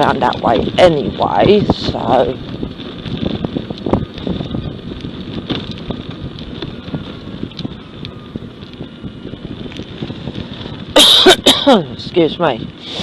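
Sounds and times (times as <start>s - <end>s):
car road and engine rumble: 0.0s - 13.0s.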